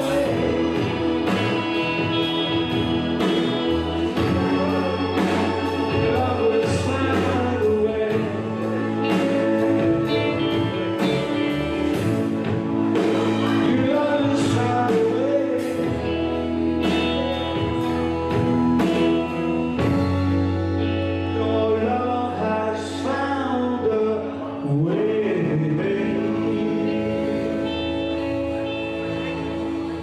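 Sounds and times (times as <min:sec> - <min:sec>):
steady drum beat: 0:00.0 - 0:20.6
gospel singing: 0:00.0 - 0:30.0
held instrument chords: 0:00.0 - 0:30.0.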